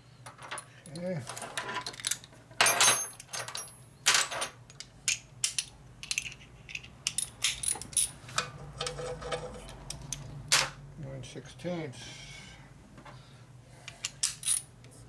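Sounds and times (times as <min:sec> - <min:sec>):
metal tools clinking: 0:00.4 - 0:08.2, 0:14.0 - 0:14.7.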